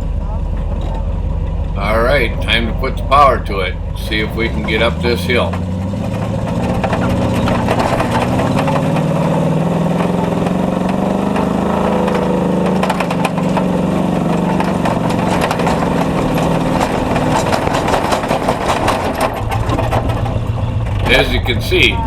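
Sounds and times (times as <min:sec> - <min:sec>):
truck engine under load: 0:00.0 - 0:22.0
truck knocking and rattling: 0:04.8 - 0:21.2.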